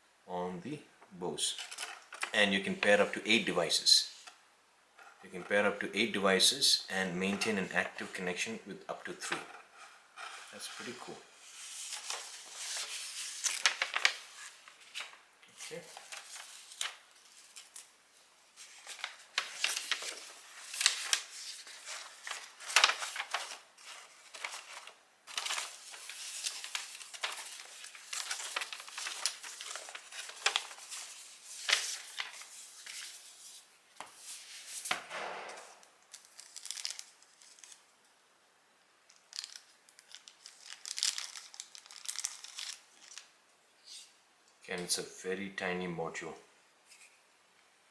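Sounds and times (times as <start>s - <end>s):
packaging crinkling: 11.5s - 17.9s, 18.6s - 33.4s, 36.0s - 37.9s, 39.1s - 43.3s.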